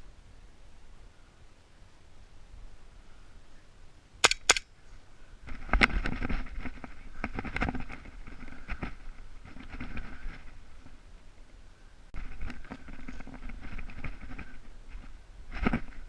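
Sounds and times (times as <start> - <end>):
airsoft gun shots: 4.2 - 4.6
rustling and crackling: 4.8 - 16.0.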